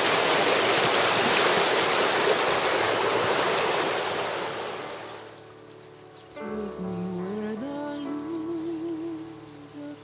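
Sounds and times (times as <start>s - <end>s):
river rapid rushing: 0.0s - 5.4s.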